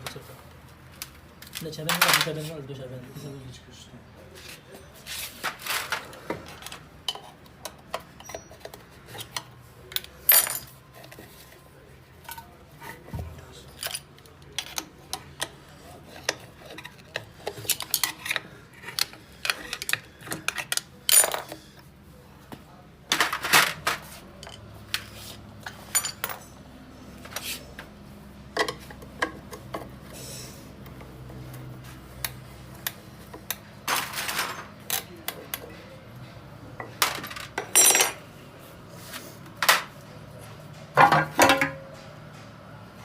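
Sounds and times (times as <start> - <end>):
metal tools clinking and clanking: 3.0 - 3.6, 4.7 - 10.8, 16.2 - 21.7, 25.6 - 26.6, 36.8 - 38.2, 41.0 - 42.0.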